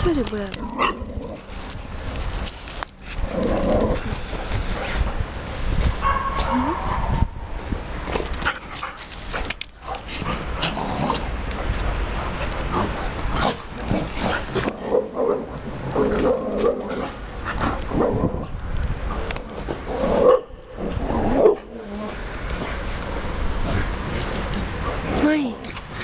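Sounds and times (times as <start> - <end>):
dog barking: 6.0 - 6.8.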